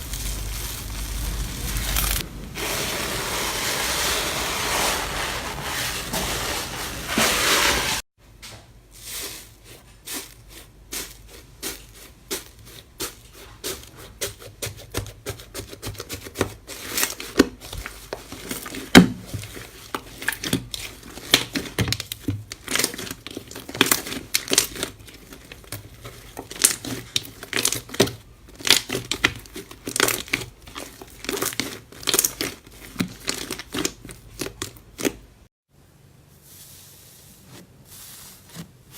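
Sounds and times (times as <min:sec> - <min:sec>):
slime crackling and popping: 0:00.0 - 0:02.2, 0:19.8 - 0:35.2.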